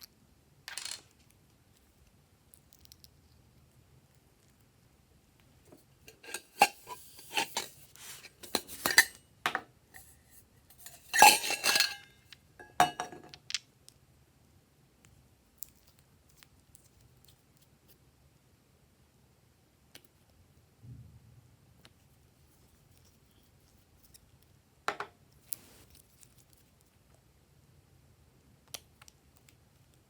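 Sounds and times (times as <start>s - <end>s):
utensils and containers clattering: 5.7s - 13.3s.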